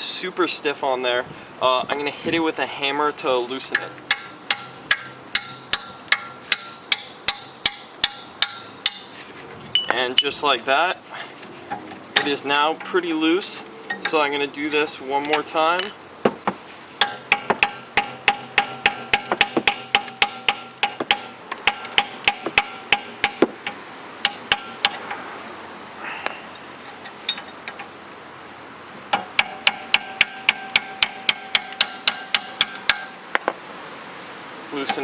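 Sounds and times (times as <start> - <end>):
hammer striking metal wrench: 3.7 - 9.1, 17.0 - 23.5, 24.2 - 25.1, 29.4 - 33.1.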